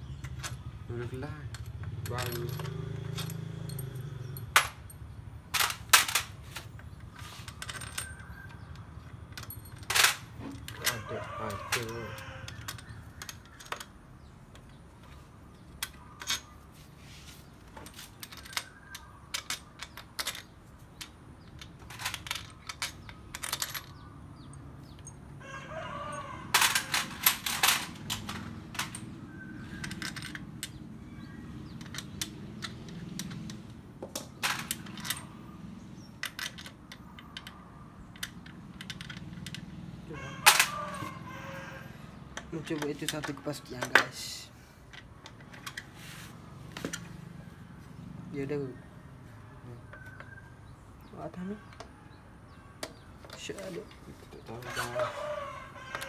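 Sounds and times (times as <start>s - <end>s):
metal tools clinking: 0.1s - 14.0s, 15.5s - 16.9s, 17.7s - 25.4s, 26.1s - 41.5s, 42.4s - 46.0s.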